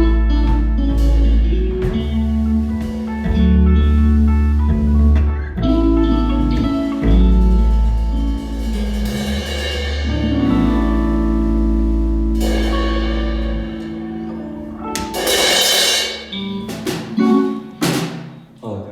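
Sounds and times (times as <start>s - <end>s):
rock band playing: 0.0s - 18.6s
cymbal crash: 12.4s - 18.6s
sharp drum hits: 12.4s - 18.6s.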